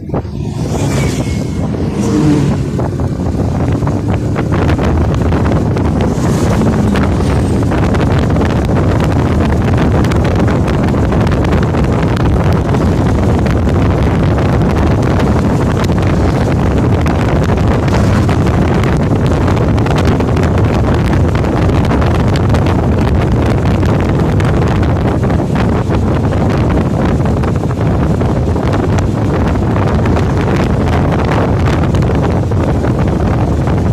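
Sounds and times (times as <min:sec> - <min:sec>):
wind buffeting microphone: 0:00.0 - 0:33.9.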